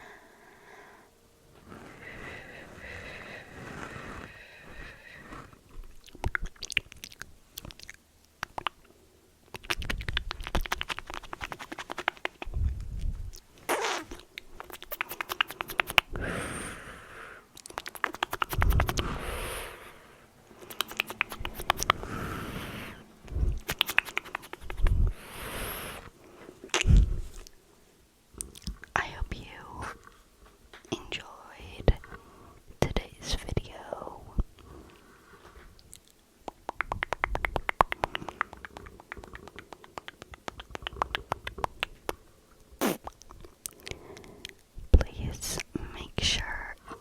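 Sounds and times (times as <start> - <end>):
crackling clicks and scratching: 9.5 - 12.5.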